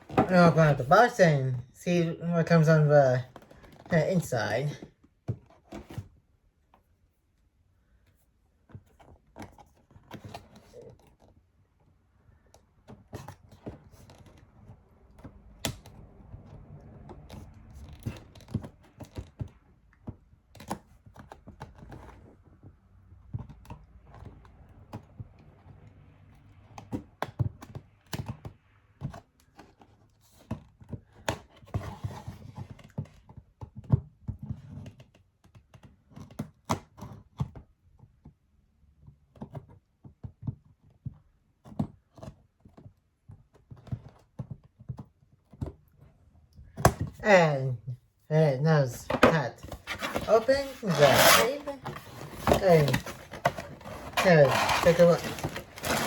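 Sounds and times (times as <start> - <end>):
cardboard box scraping and knocking: 29.1 - 33.2, 49.0 - 56.0.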